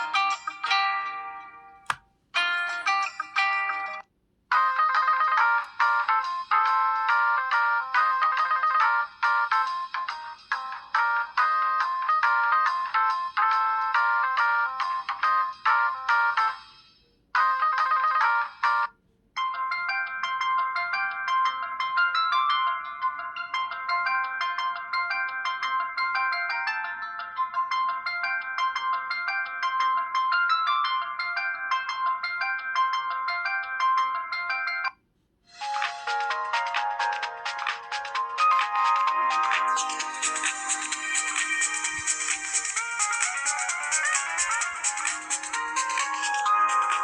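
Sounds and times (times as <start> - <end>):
cell phone ringtones: 35.5 - 47.0.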